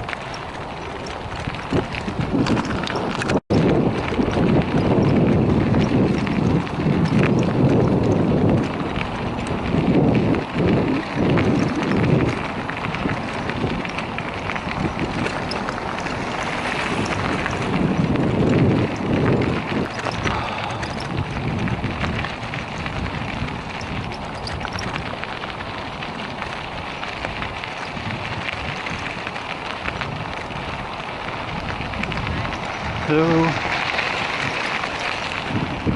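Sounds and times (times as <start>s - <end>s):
bicycle tyres crackling over gravel: 0.0s - 35.9s
wind noise on microphone: 0.0s - 35.9s.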